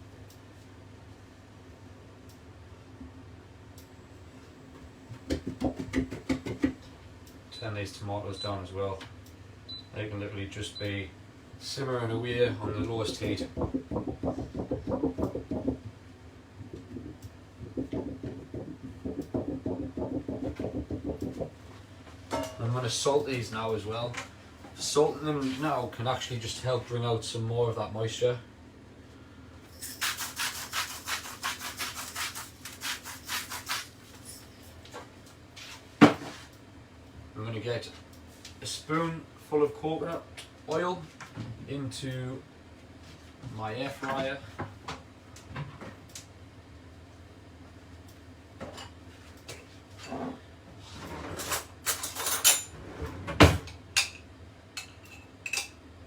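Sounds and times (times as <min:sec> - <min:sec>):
salt grinder grinding: 0:29.8 - 0:33.9.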